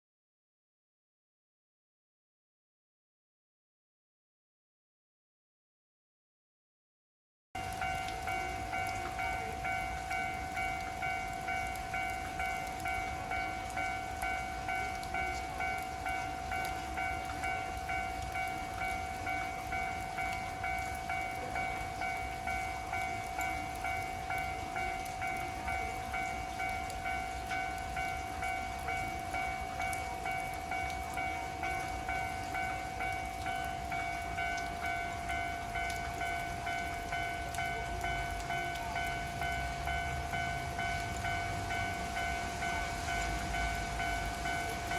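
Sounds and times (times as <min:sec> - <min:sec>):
level crossing warning bell: 0:07.6 - 0:44.9
heavy rain hiss: 0:27.5 - 0:44.9.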